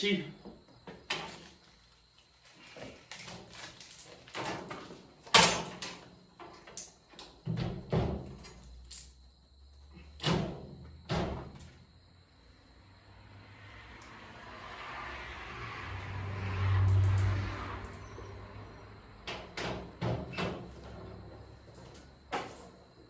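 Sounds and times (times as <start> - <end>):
steel tool box knocks and clunks: 7.4 - 8.6, 19.3 - 22.8.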